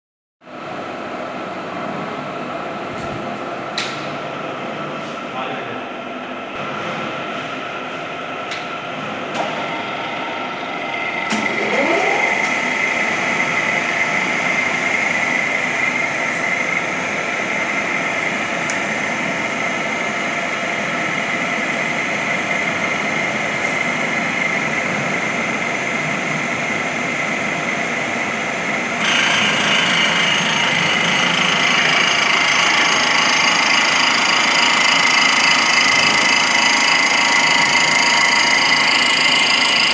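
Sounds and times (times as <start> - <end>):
grinding machine hum and whine: 0.5 - 39.9
motor spinning up: 11.1 - 12.7, 29.0 - 39.9.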